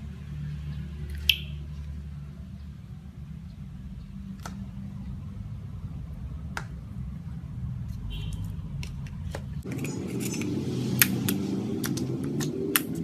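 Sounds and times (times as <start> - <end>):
slime squishing: 11.0 - 13.0.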